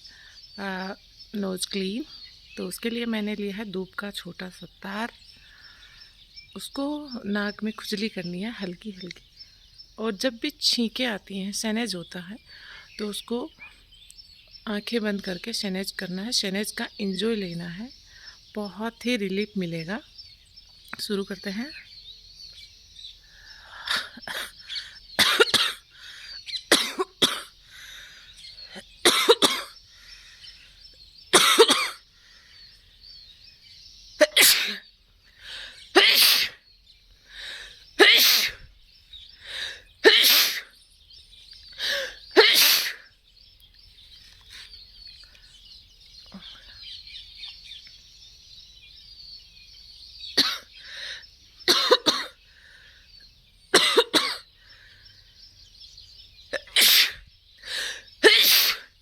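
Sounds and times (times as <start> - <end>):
person sneezing: 34.2 - 34.8, 36.0 - 36.6, 38.0 - 38.6, 40.1 - 40.7, 41.8 - 43.0, 56.6 - 57.2, 58.2 - 58.9.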